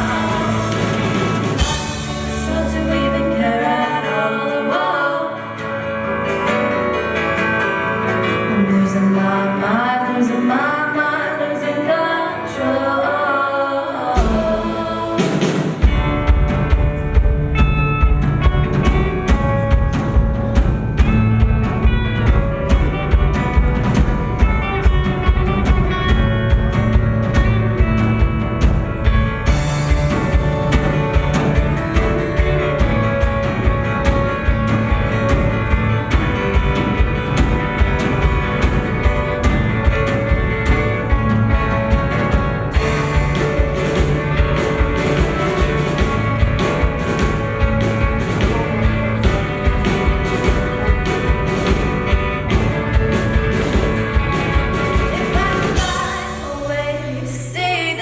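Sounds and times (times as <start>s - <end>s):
drum kit beat: 0.0s - 2.7s, 14.2s - 57.2s
live rock band playing: 0.0s - 12.9s, 14.2s - 58.0s.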